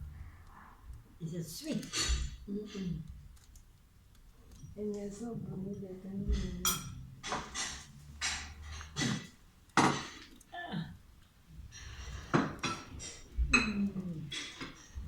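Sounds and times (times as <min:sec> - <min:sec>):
hard objects knocking and clinking: 0:05.7 - 0:10.5.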